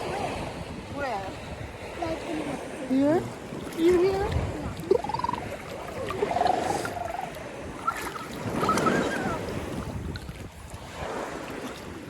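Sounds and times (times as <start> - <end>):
seawater and waves washing: 0.0 - 12.0
high-pitched voices calling out: 4.8 - 5.5.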